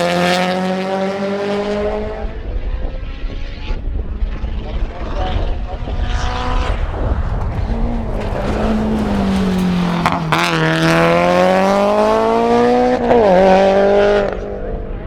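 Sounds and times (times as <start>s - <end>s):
car engine revving through gears: 0.0s - 2.3s, 6.1s - 14.7s
sharp engine crack: 7.3s - 13.2s.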